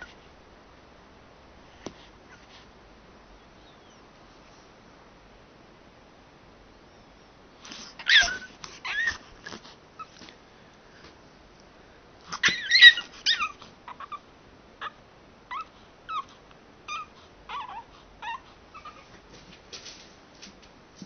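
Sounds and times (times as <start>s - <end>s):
dog whining and whimpering: 7.9s - 10.2s, 12.3s - 14.2s, 14.8s - 19.2s.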